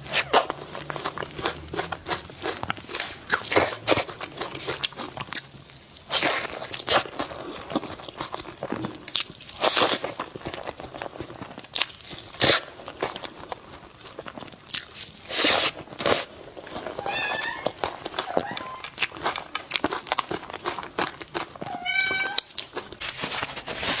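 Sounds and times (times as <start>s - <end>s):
cat eating crunchy bites: 0.0s - 24.0s
cat meowing: 17.0s - 19.0s, 21.6s - 22.5s.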